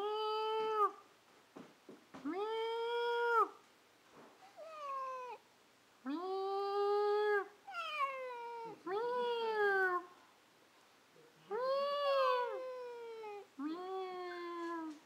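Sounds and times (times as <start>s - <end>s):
cat meowing: 4.6s - 5.4s, 6.4s - 10.0s, 11.5s - 13.5s.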